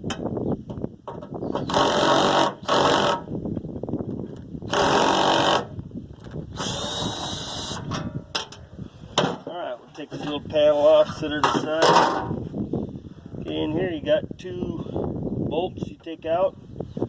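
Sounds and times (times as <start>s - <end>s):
power drill-driver running: 6.6s - 7.9s.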